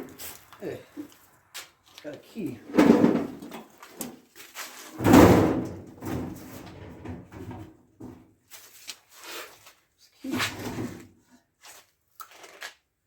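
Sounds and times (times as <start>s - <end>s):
toolbox clattering and rattling: 2.6s - 4.2s, 4.8s - 8.2s.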